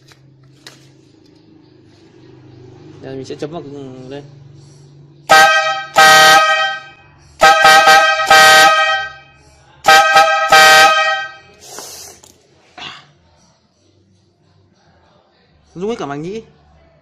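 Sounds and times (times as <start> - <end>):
electric air horn blasts: 5.3 - 11.6.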